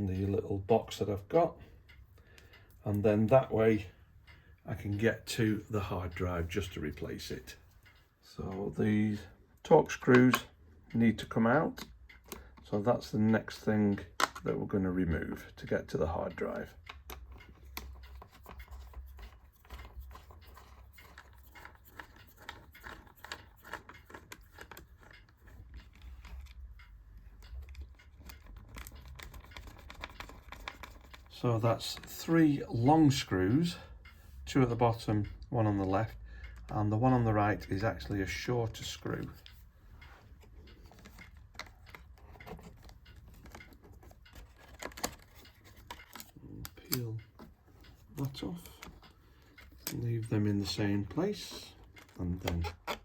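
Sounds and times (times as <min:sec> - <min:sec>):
small screws and tools clicking: 0:16.8 - 0:32.2, 0:39.1 - 0:50.1.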